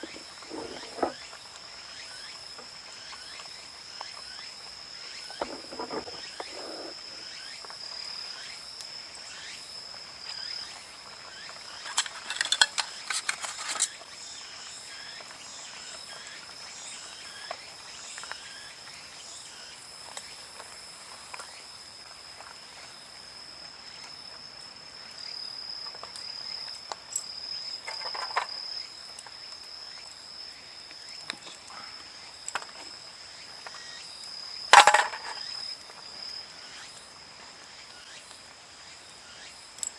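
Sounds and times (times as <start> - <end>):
sharp clicks and knocks: 0.0 - 1.2
crickets trilling: 0.0 - 39.9.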